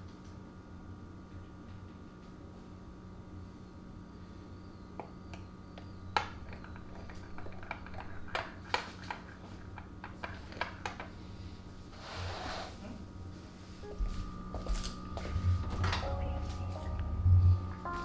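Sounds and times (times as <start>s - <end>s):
low steady hum: 12.7s - 18.0s.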